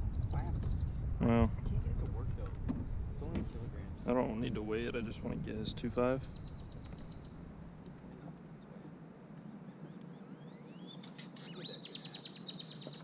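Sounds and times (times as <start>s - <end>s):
small bird singing: 0.0s - 0.9s, 6.1s - 7.4s, 9.4s - 13.0s.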